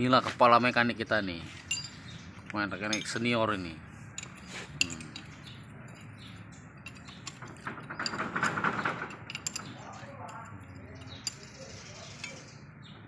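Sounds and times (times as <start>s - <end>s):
metal scraping: 1.5s - 12.6s
metal parts clinking: 1.6s - 12.6s.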